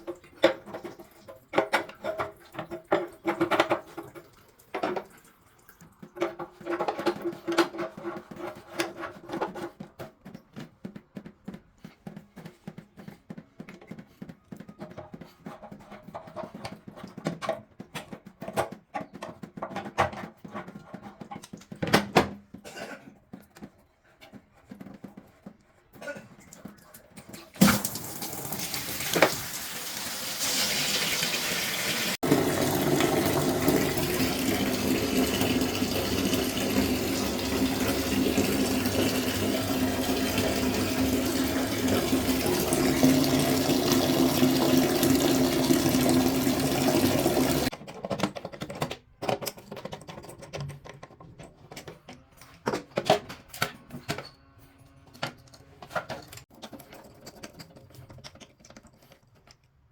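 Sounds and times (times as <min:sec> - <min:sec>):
faucet running into sink: 0:27.6 - 0:47.7.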